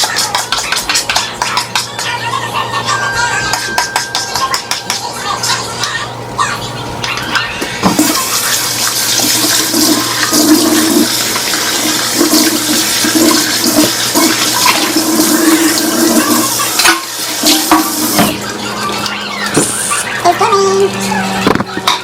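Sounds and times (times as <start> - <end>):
water rushing: 8.0 - 18.4.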